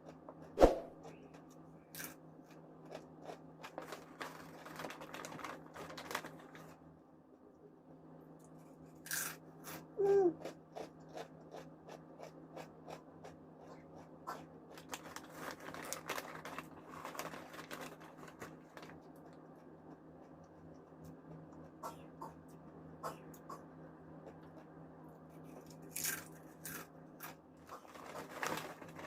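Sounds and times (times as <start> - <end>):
chips being chewed: 2.0 - 6.6, 8.7 - 22.4, 24.2 - 29.0.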